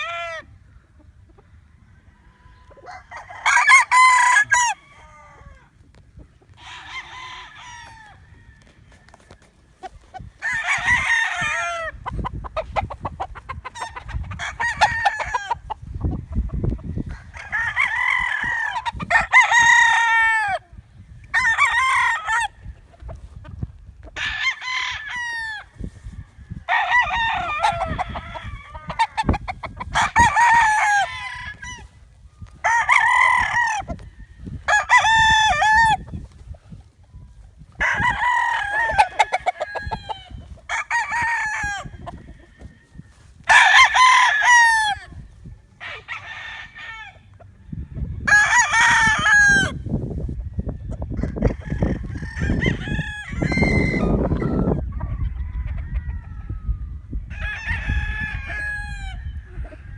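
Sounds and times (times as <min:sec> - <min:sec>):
chickens clucking: 0:00.0 - 0:03.8, 0:04.5 - 0:06.8, 0:11.6 - 0:17.6, 0:27.5 - 0:31.0
roosters crowing: 0:00.0 - 0:59.9.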